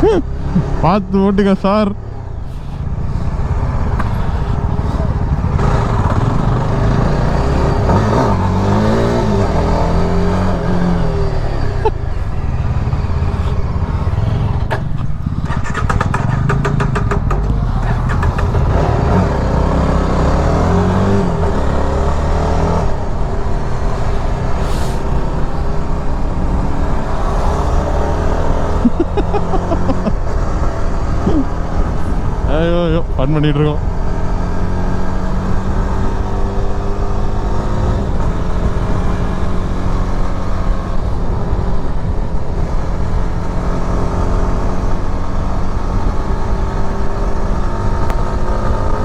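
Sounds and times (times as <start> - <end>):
motorcycle engine revving: 2.7 - 49.0
wind noise on microphone: 30.4 - 32.6.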